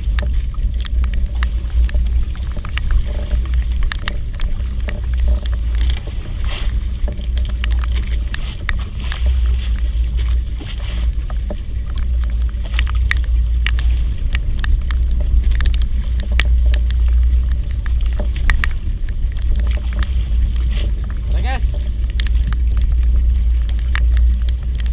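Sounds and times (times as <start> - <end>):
boat engine rumbling: 0.0 - 24.9
sharp ticks and taps: 11.9 - 24.9.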